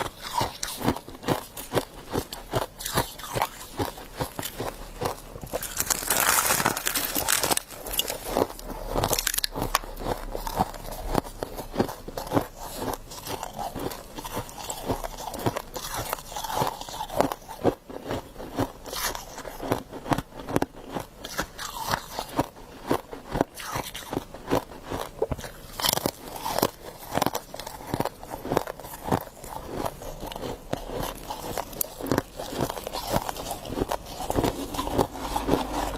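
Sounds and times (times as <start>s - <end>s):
ice crunching between teeth: 0.0s - 35.9s.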